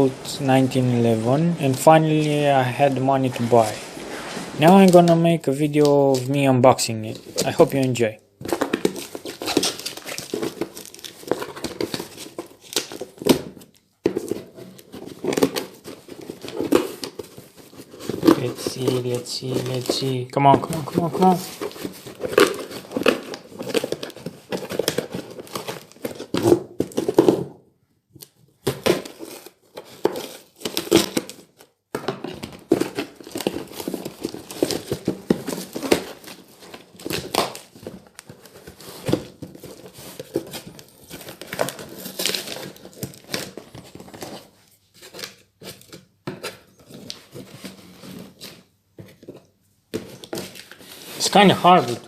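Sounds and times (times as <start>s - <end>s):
packaging tearing and crinkling: 0.0s - 6.3s, 8.5s - 13.4s, 20.7s - 27.4s, 28.7s - 31.7s, 32.3s - 46.0s.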